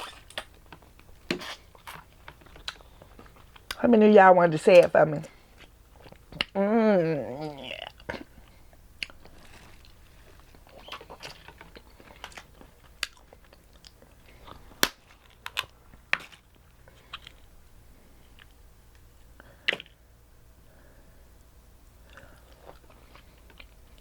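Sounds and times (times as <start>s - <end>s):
wet chewing: 1.4s - 3.8s, 7.2s - 17.5s.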